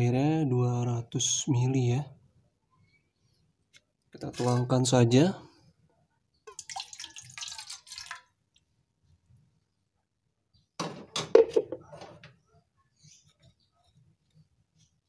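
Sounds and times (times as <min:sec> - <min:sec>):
water pouring into a pot: 0:06.5 - 0:08.4.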